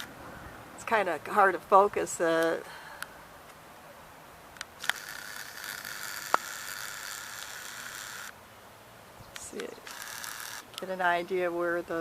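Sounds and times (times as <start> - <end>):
camera clicks: 4.6 - 8.3, 9.4 - 10.9
zoom lens motor whirring: 4.7 - 8.4, 9.6 - 10.8.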